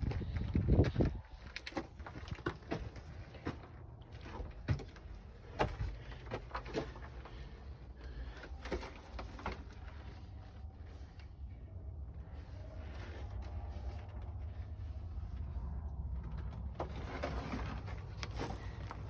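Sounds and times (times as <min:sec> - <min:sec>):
steady low rumble: 0:00.0 - 0:19.0
footsteps on gravel: 0:17.0 - 0:19.0.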